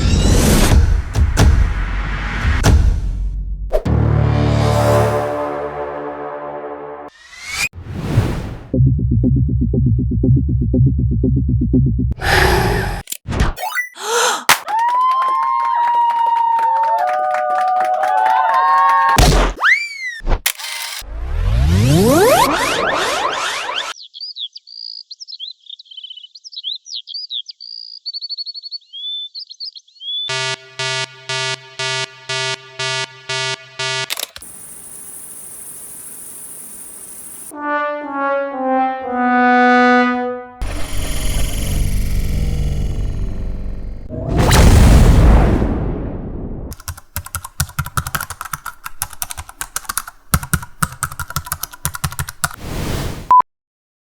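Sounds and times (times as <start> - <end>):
songbird singing: 24.0 - 30.3
pulsing synth tone: 30.3 - 37.5, 40.6 - 44.3
deep boom: 40.6 - 46.7
typing on a computer keyboard: 46.7 - 52.6.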